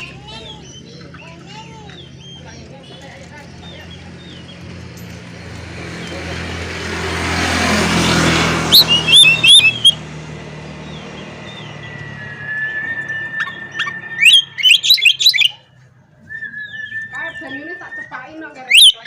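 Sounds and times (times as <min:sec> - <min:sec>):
vehicle passing: 0:00.0 - 0:19.0
bird singing whistled notes: 0:08.7 - 0:10.0, 0:10.9 - 0:19.0.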